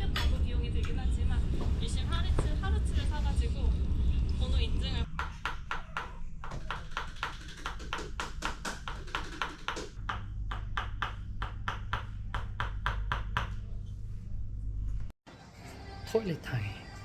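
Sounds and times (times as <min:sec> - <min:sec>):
low steady hum: 0:00.0 - 0:05.1.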